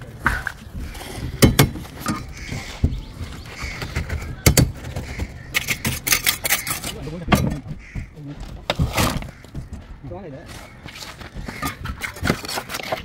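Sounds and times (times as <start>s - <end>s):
knocks and clanks of tools: 0.2s - 10.0s.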